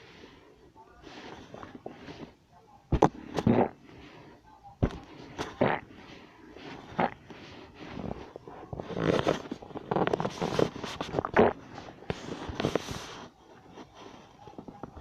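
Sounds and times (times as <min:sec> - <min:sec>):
stomach growling with clicks: 0:06.9 - 0:07.4, 0:08.7 - 0:11.8.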